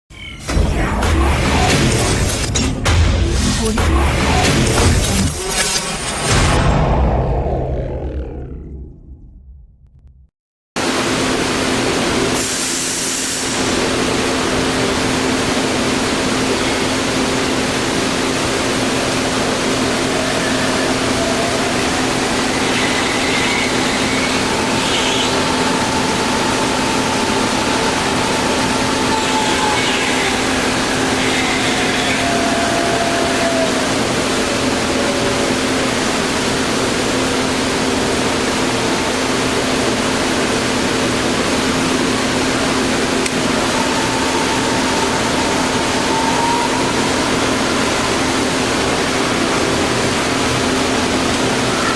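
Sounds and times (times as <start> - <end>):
rising whine: 0.5 - 12.2, 13.6 - 51.9
drill press humming: 13.5 - 51.9.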